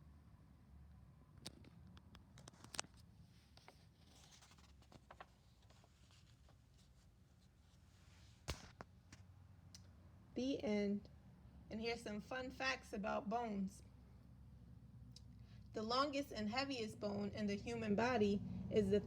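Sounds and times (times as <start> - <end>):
soft rustle: 2.3 - 9.3.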